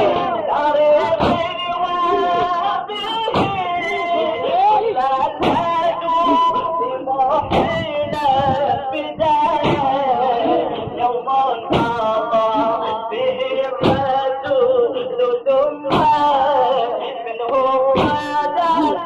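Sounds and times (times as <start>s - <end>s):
heavy beat: 0.0s - 15.2s, 15.9s - 19.0s
person chanting: 0.0s - 19.0s.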